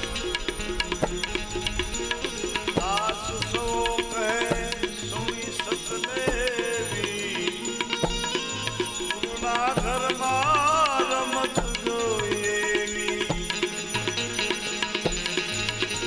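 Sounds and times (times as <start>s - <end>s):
hand drum beats: 0.0s - 16.0s.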